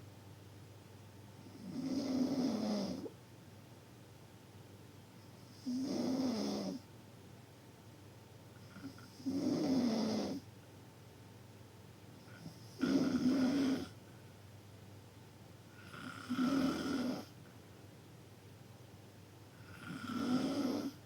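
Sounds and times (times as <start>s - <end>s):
loud snoring: 1.5s - 3.1s, 5.6s - 6.8s, 8.8s - 10.4s, 12.4s - 14.0s, 15.8s - 17.3s, 19.6s - 21.0s.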